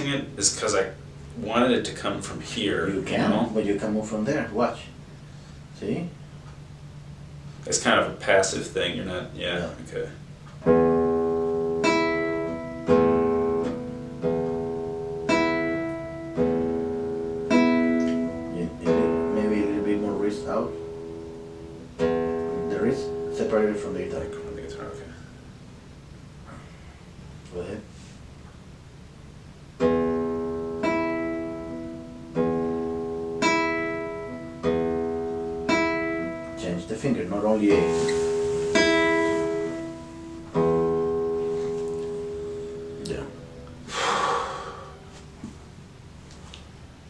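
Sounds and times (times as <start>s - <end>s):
classical guitar plucked: 10.6s - 25.0s, 29.8s - 36.7s, 37.7s - 43.8s.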